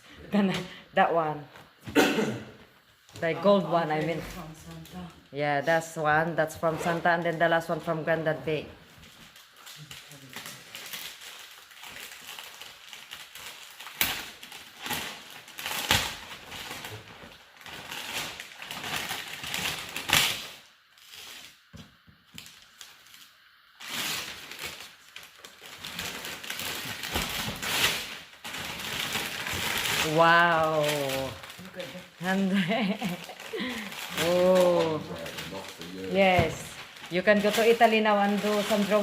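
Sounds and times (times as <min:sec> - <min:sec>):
wrapping paper tearing and crumpling: 0:09.0 - 0:39.0.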